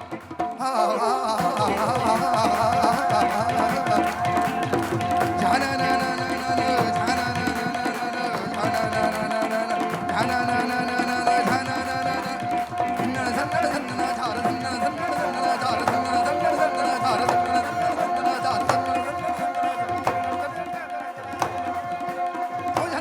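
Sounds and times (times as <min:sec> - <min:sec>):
hand drums: 0:00.0 - 0:23.0.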